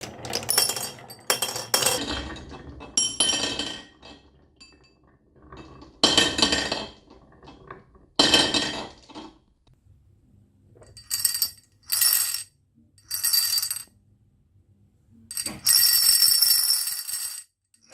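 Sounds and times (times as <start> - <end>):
marble rolling rumble: 0.0 - 9.6.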